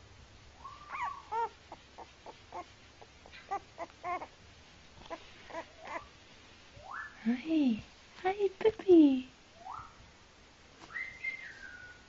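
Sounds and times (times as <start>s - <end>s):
puppy whimpering: 0.6s - 4.4s, 5.0s - 6.1s.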